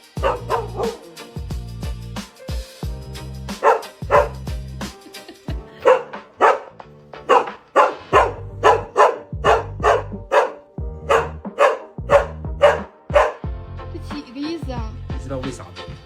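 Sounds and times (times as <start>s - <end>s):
background music: 0.0s - 16.0s
dog barking: 0.2s - 1.1s, 3.6s - 4.4s, 5.8s - 13.5s.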